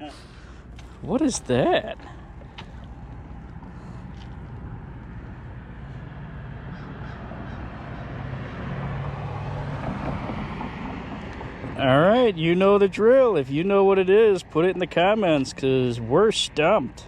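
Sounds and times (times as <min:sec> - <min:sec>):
vehicle passing by: 0:01.0 - 0:12.8.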